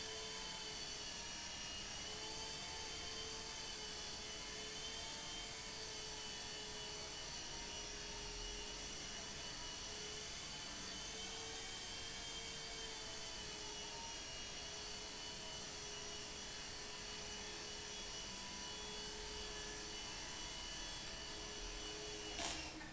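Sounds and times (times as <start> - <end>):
rc helicopter high whine: 0.0 - 22.9.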